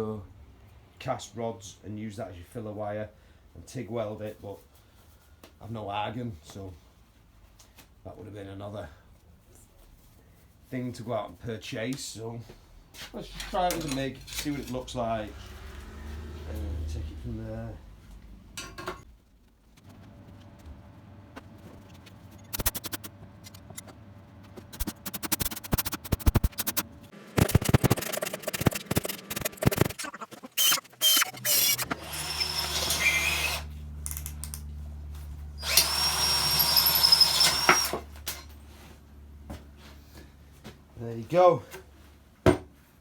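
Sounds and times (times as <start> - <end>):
welder machine hum: 35.6 - 38.0.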